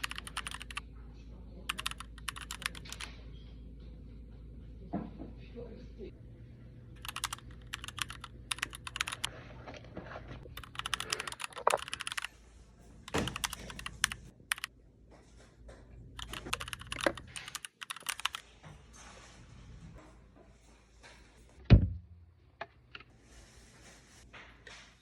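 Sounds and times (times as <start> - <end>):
rapid keyboard typing: 0.0 - 0.8, 1.7 - 3.1, 7.0 - 9.3, 10.5 - 12.3, 13.1 - 14.7, 16.2 - 18.4.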